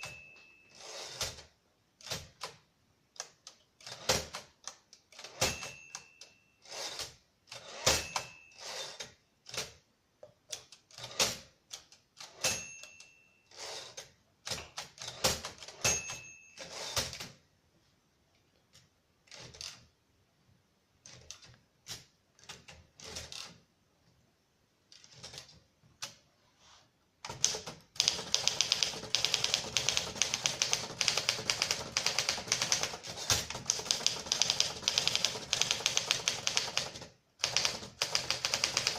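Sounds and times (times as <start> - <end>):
typewriter bell pings: 0.0 - 1.5, 5.1 - 9.2, 12.2 - 14.1, 15.0 - 17.3, 28.0 - 38.9
typewriter key strokes: 3.2 - 6.1, 10.5 - 17.4, 21.0 - 23.6, 27.2 - 38.9.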